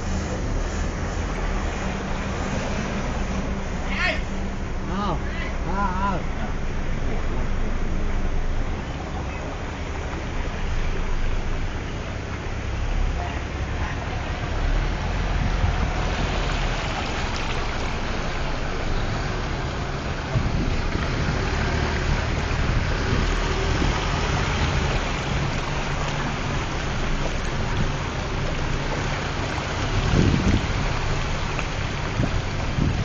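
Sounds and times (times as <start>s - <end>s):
engine running: 0.0s - 33.0s
rushing water: 0.0s - 33.0s
wind noise: 15.2s - 33.0s.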